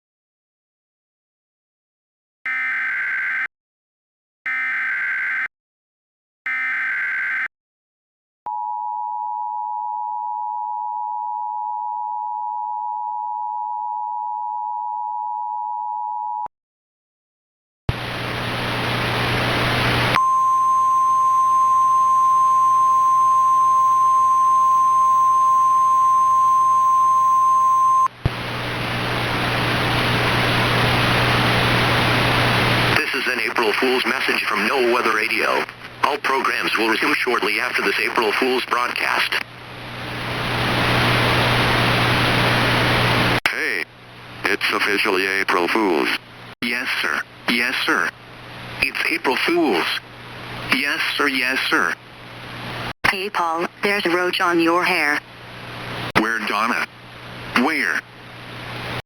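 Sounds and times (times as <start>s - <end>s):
hissing static: 17.9s - 20.2s, 28.2s - 43.4s, 55.5s - 59.0s
two-tone attention signal: 20.2s - 28.1s
steady single tone: 20.2s - 28.2s.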